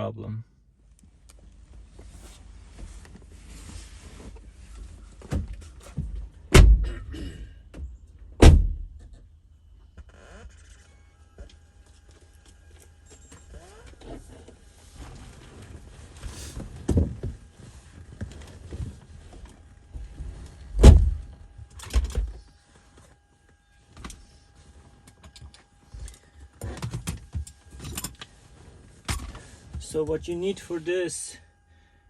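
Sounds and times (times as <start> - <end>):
knocks and thumps in car: 5.3 - 7.1, 7.8 - 9.2, 20.7 - 22.4.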